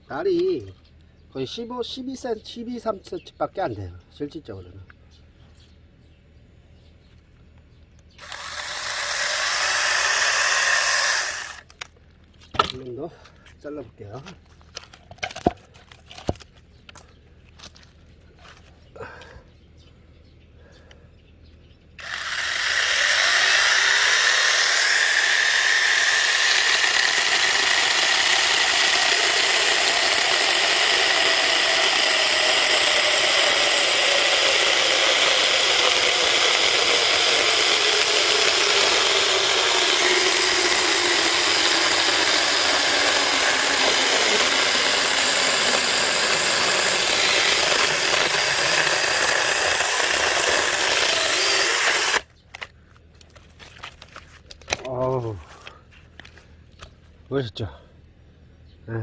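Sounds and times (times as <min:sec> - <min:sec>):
chainsaw cutting wood: 0:08.2 - 0:11.8, 0:22.0 - 0:52.3.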